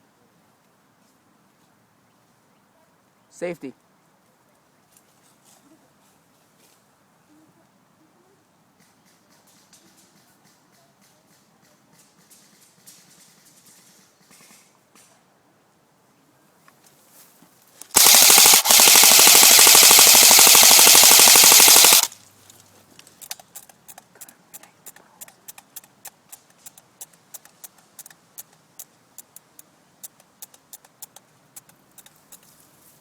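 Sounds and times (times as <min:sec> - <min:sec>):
airsoft rifle full-auto burst: 0:17.9 - 0:22.2.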